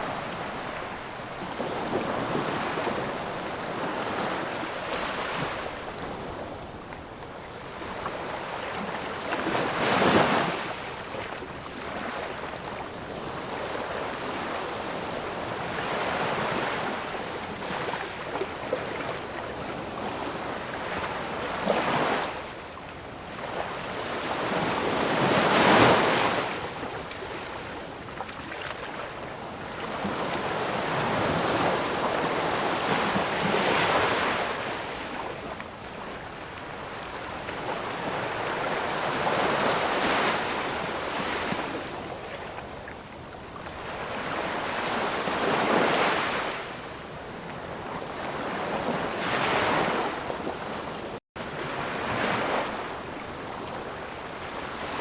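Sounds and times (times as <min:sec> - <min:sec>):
waves breaking on shore: 0:00.0 - 0:55.0.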